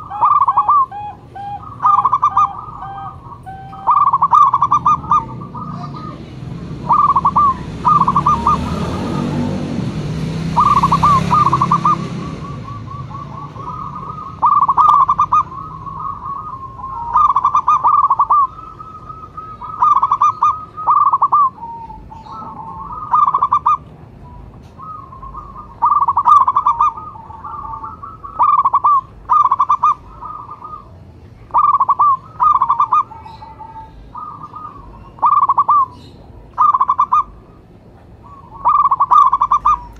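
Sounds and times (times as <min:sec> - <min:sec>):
dove cooing: 0:00.0 - 0:39.9
rushing noise: 0:04.2 - 0:17.9.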